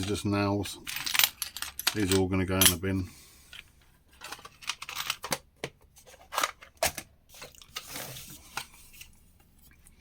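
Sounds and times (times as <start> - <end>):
nails clattering: 0.7 - 2.8.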